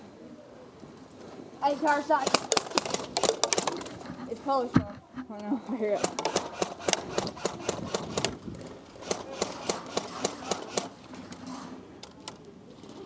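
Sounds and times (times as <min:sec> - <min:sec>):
airsoft guns firing shots: 0:02.2 - 0:03.8, 0:05.9 - 0:08.4, 0:09.0 - 0:11.2.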